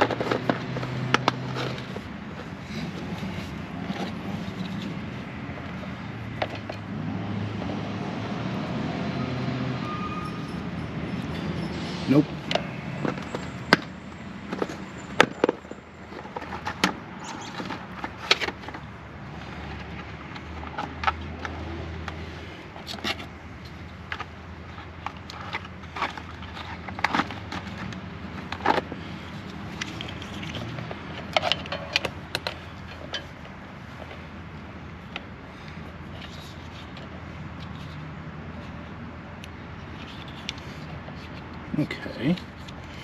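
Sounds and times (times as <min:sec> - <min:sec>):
hand tools clicking and tapping: 0:22.8 - 0:34.2.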